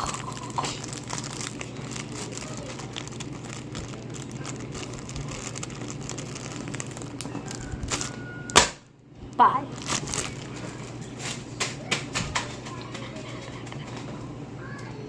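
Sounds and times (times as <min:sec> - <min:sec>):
slime crackling and squishing: 0:00.0 - 0:11.9.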